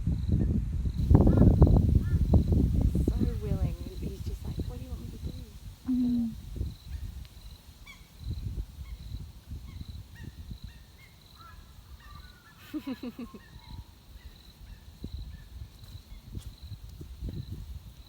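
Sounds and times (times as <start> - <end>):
faint high bird pip: 1.0 - 3.2.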